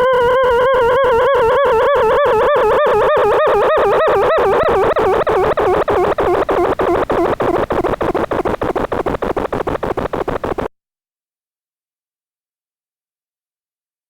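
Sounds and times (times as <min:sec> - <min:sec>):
buzzy wobbling synthesized tone: 0:00.0 - 0:10.7.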